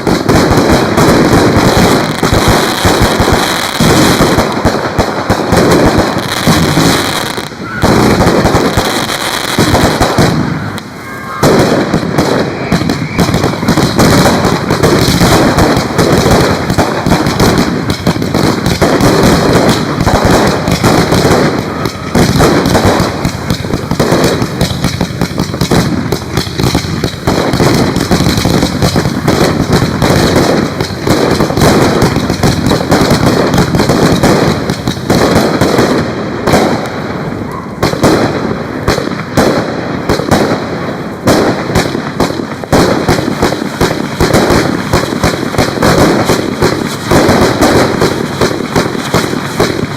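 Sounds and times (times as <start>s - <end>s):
fireworks bangs and crackles: 0.0s - 49.9s.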